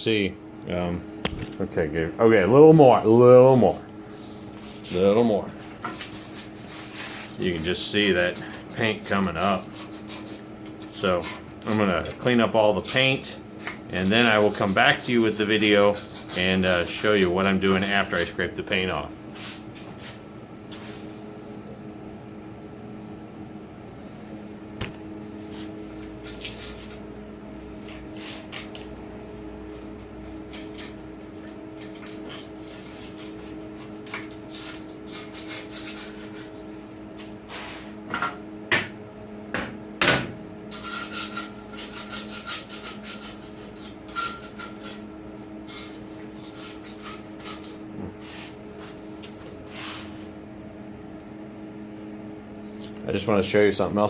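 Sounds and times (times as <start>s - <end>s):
steady hum: 0.0s - 54.0s.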